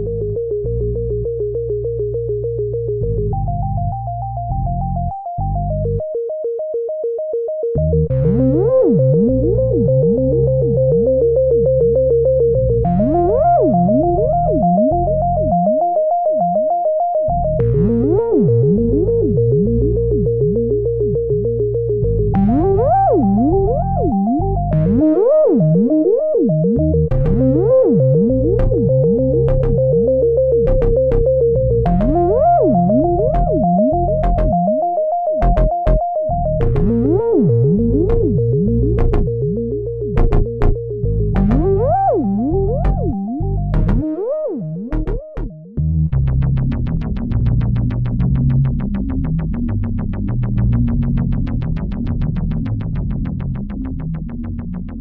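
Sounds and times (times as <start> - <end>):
synthesizer music: 7.7 - 45.8.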